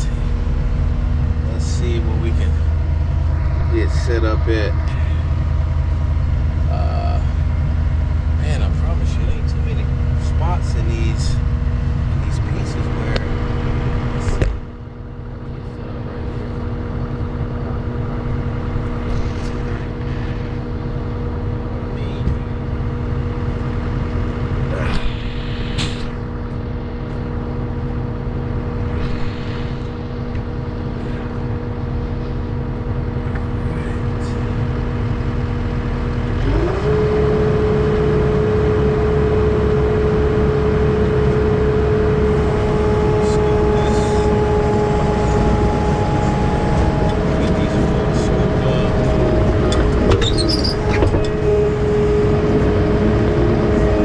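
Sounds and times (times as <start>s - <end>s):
diesel truck engine running: 0.0s - 54.0s
short hisses: 24.9s - 26.2s.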